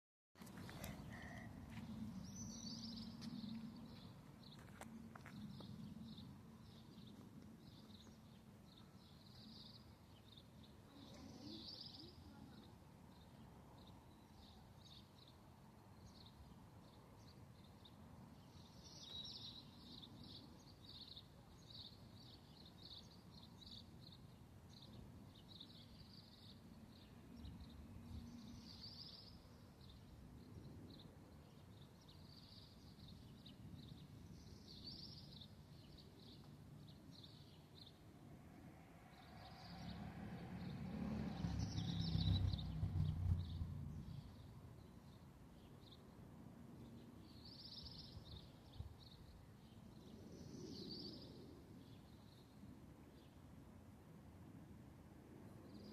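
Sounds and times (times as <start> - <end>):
small birds chirping: 0.4 - 38.1, 40.6 - 46.1.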